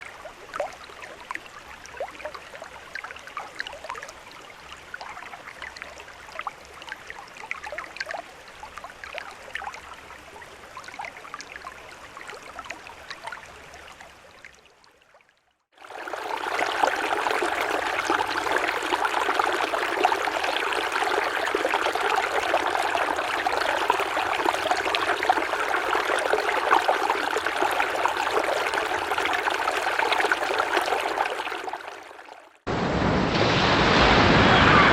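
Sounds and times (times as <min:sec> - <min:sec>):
water trickling and dripping: 0:00.0 - 0:32.6
stream water rushing: 0:15.8 - 0:34.9.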